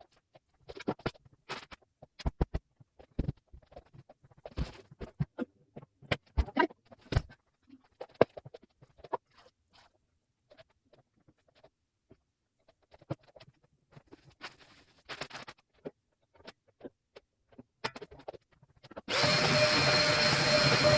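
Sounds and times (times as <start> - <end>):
sped-up cleaning clatter: 19.1 - 20.9.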